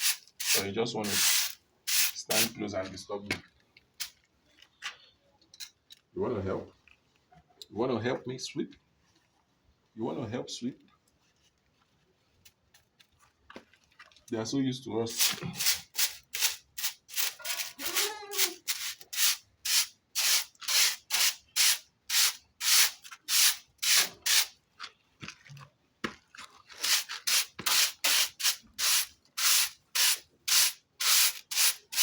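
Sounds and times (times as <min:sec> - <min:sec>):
broom sweeping a floor: 0:00.0 - 0:02.5, 0:15.1 - 0:24.5, 0:26.8 - 0:32.0.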